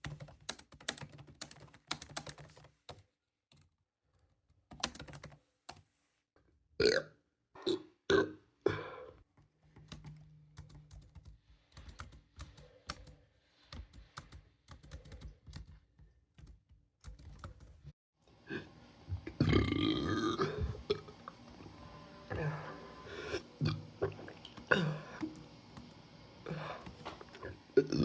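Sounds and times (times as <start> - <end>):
person burping: 6.8 - 9.2, 19.3 - 21.2, 22.3 - 25.3, 27.4 - 28.0.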